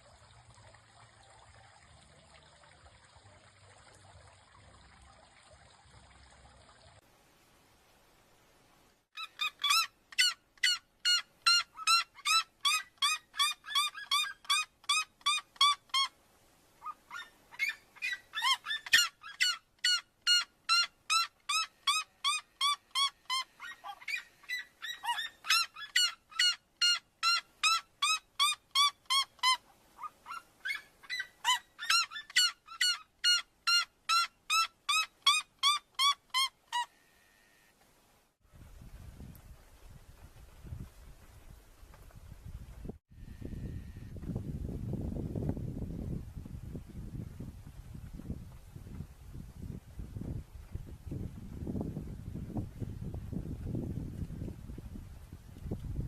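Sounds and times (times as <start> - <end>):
bird yelping calls: 16.8 - 36.9.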